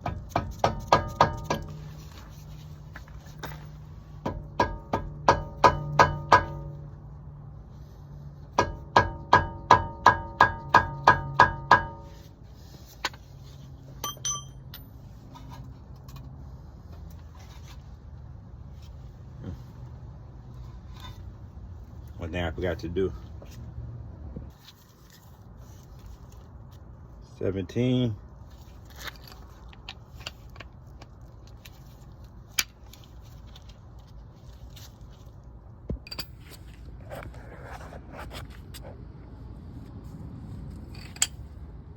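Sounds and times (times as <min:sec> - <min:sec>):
light metal clinks and taps: 0:14.0 - 0:15.0.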